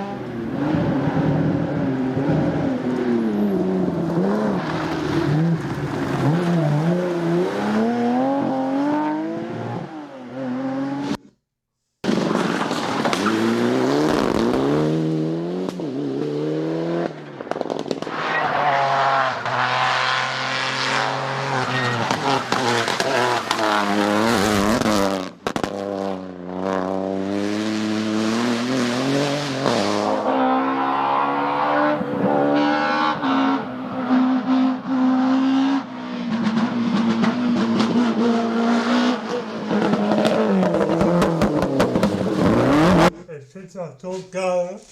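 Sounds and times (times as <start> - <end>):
rally car engines revving: 0.0 - 11.3, 12.1 - 43.2.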